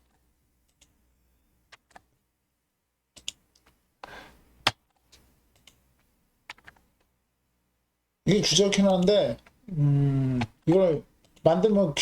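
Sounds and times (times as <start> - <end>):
computer keyboard keys clicking: 3.2 - 3.7.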